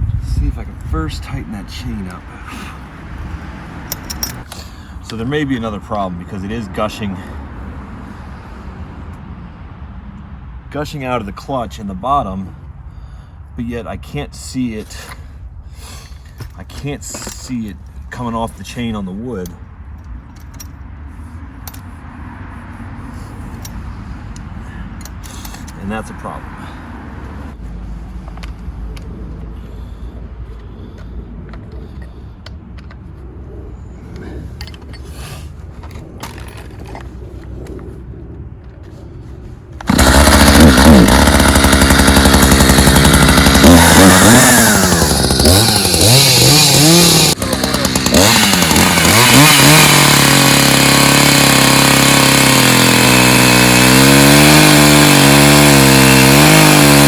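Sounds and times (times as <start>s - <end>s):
chainsaw revving: 39.8s - 57.0s.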